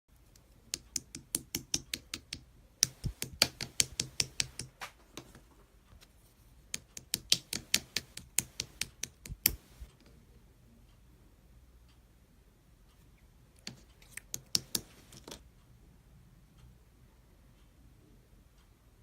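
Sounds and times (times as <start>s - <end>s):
rapid sharp taps: 0.7s - 5.3s, 6.7s - 9.9s.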